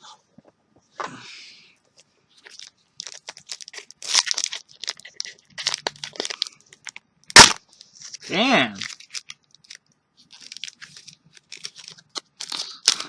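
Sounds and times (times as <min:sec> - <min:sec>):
foil wrapper ripping: 0:02.4 - 0:08.2, 0:08.8 - 0:13.0
foil wrapper crinkling: 0:02.4 - 0:13.0.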